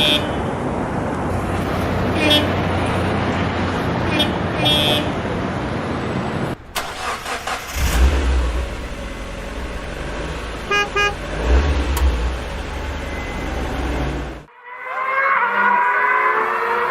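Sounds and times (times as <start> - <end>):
vehicle engine deep rumble: 7.6 - 14.5
short horn beeps: 10.7 - 11.2.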